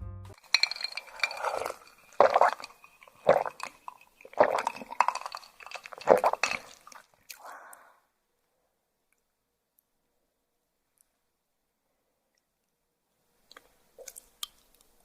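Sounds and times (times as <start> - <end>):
wet chewing of raw fish: 1.0 - 7.4.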